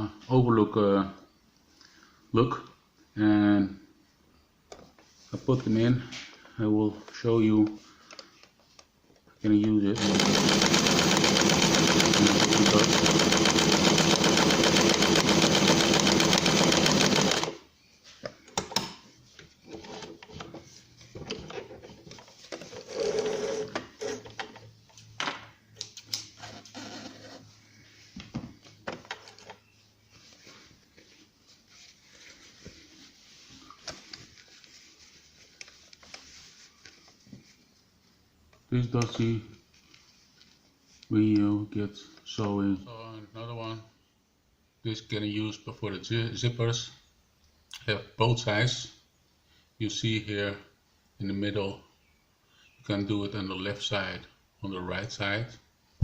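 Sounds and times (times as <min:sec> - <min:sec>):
electric sewing machine stitching: 0:10.0 - 0:17.6
fabric rustling: 0:30.0 - 0:38.2.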